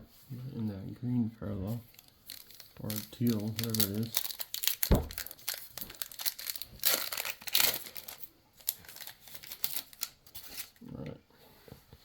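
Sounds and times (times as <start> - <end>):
plastic wrapper crinkling and tearing: 1.8 - 10.8
soft thump: 4.9 - 5.2.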